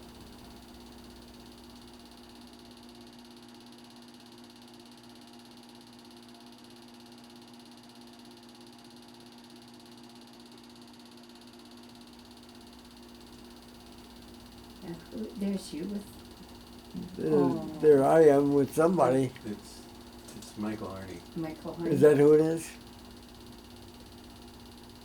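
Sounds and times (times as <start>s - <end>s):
faint steady hum: 0.0s - 3.1s, 12.0s - 25.0s
even hiss: 13.3s - 25.0s.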